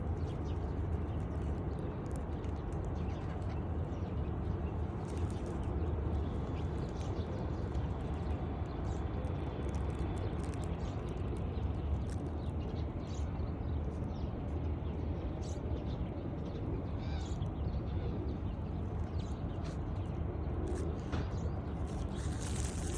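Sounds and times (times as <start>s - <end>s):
wings fluttering: 21.8s - 22.9s.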